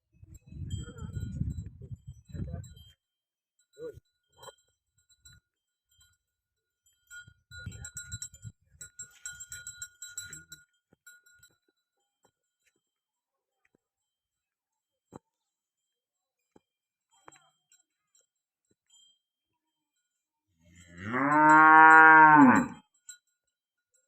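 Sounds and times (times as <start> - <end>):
faint livestock calls: 20.6 - 22.8.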